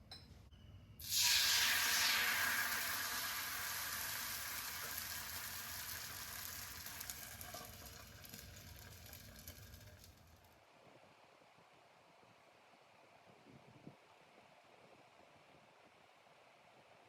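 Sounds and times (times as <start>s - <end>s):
food sizzling in a pan: 1.0s - 10.2s
small crackles: 6.4s - 10.6s.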